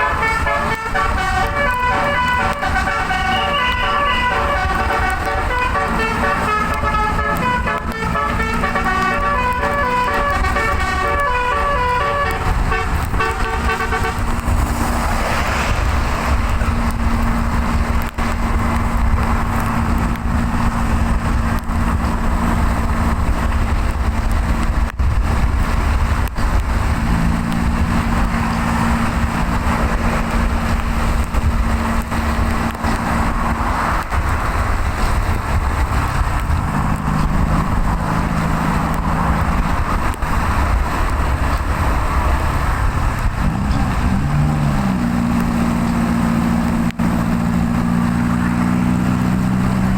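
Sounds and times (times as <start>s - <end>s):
musical air horn tune: 0.0s - 14.4s
low engine drone: 0.0s - 49.9s
road and wind noise: 0.0s - 49.9s.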